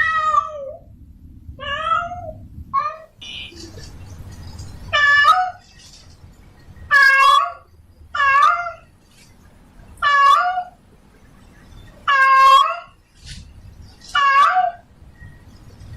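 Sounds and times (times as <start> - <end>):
cat meowing loudly: 0.0 - 0.8, 1.6 - 3.1, 6.9 - 7.6, 8.2 - 8.8, 14.2 - 14.8.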